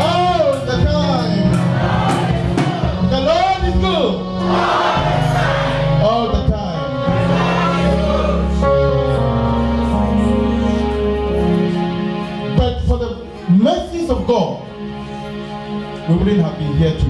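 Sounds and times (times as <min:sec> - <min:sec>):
instrumental backing with low bass: 0:00.0 - 0:17.0
voices singing gospel song: 0:01.5 - 0:06.1, 0:07.0 - 0:08.8.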